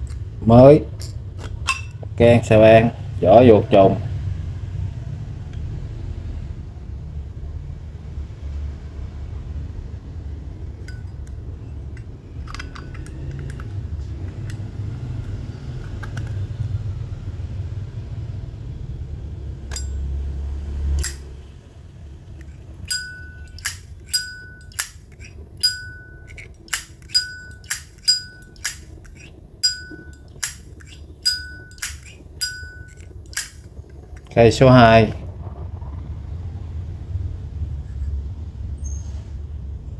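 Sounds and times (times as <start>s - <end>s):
lighter lid clicking open and shut: 10.8s - 16.5s, 21.0s - 21.3s, 22.4s - 34.3s
low rumble: 25.4s - 39.9s.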